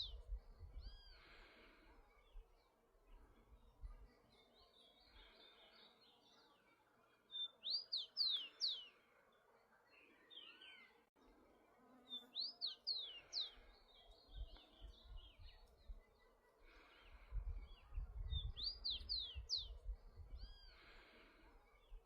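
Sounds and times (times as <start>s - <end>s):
sparrow singing: 0.0s - 2.7s, 3.5s - 9.0s, 12.1s - 21.1s.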